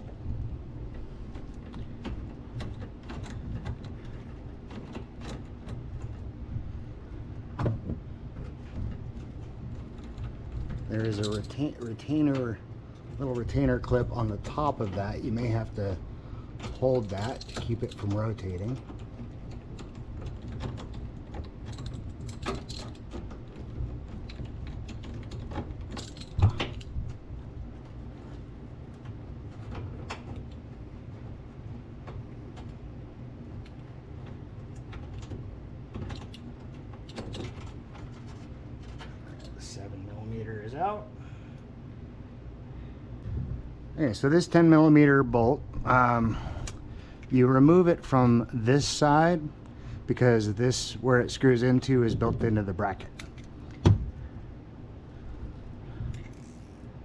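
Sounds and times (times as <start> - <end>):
wrench clicking: 56.1 - 56.8.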